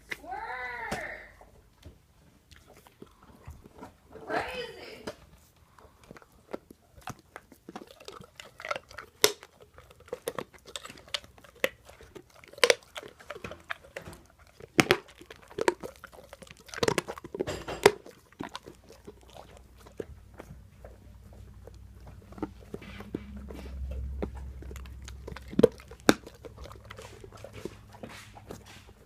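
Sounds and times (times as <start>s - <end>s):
dog chewing a bone: 1.4s - 29.0s
bone cracking: 6.0s - 28.1s.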